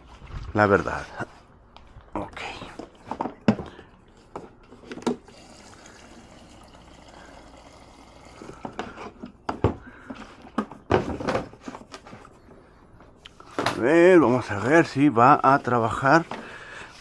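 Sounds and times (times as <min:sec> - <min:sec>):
knocks and clatter of handling: 0:02.6 - 0:05.2, 0:08.6 - 0:12.3
liquid pouring: 0:05.2 - 0:08.8.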